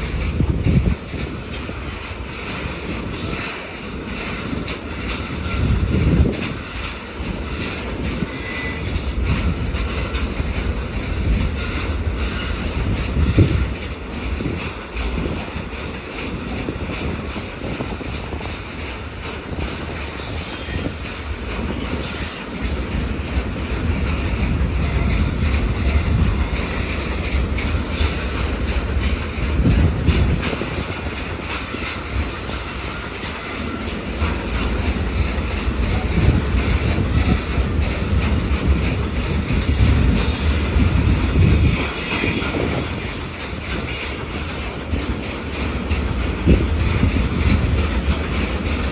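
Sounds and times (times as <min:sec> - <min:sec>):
freight train rumbling past: 0:00.0 - 0:48.9
wheels clacking over rail joints: 0:00.0 - 0:48.9
high-pitched wheel squeal: 0:08.3 - 0:09.2, 0:39.3 - 0:44.3.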